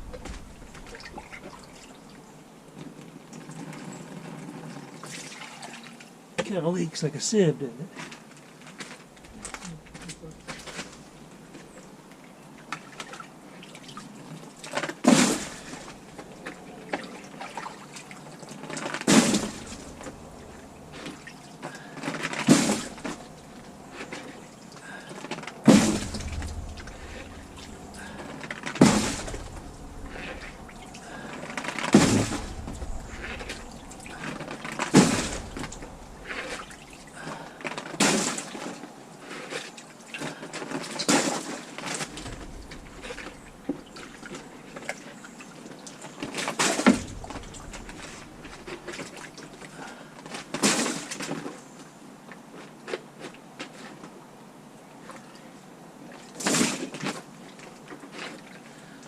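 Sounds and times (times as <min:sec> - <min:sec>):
water dribbling: 0:00.0 - 0:02.3, 0:09.2 - 0:37.8, 0:41.8 - 0:45.8, 0:46.6 - 0:50.4
bucket of water splashing: 0:12.6 - 0:38.5.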